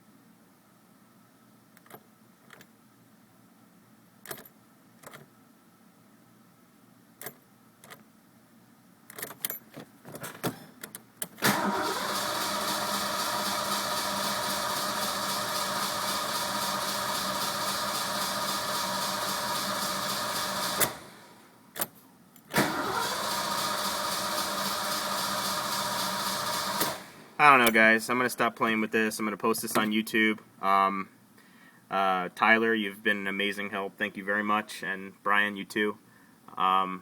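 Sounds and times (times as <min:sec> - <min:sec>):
car engine starting and running: 0:11.4 - 0:21.5, 0:22.6 - 0:27.8.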